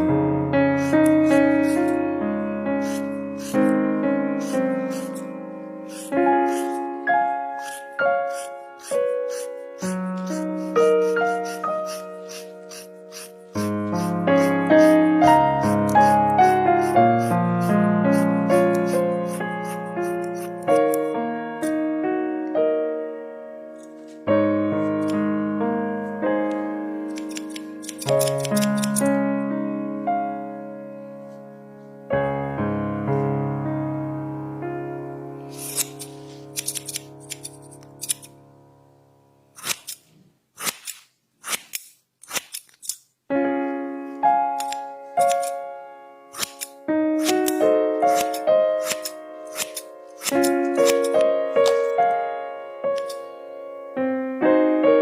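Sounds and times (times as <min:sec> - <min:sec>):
deep piano chord: 0:00.0 - 0:27.1, 0:29.0 - 0:36.5, 0:37.6 - 0:39.5, 0:43.3 - 0:55.0
slow piano melody: 0:00.0 - 0:40.2, 0:43.3 - 0:55.0
scissors snipping hair: 0:02.8 - 0:03.8, 0:04.4 - 0:05.3, 0:05.9 - 0:06.8, 0:07.6 - 0:15.0, 0:15.7 - 0:16.2, 0:16.8 - 0:17.3, 0:18.1 - 0:21.1, 0:27.1 - 0:29.1, 0:35.5 - 0:38.3, 0:39.6 - 0:40.0, 0:40.6 - 0:43.0, 0:44.6 - 0:45.6, 0:46.3 - 0:51.9, 0:52.9 - 0:53.2.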